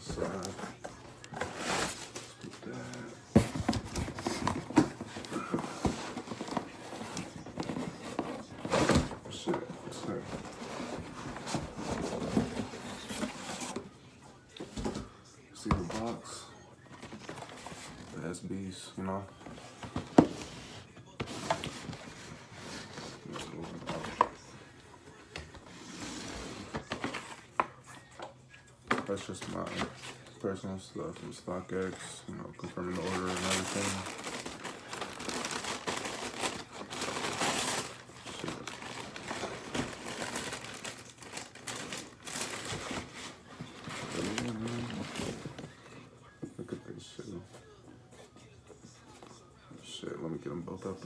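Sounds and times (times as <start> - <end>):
rustling: 0.0 - 13.9, 31.8 - 45.9.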